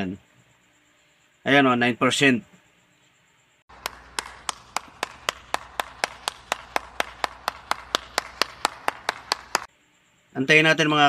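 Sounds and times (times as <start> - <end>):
rapid sharp clicks: 3.7 - 9.7.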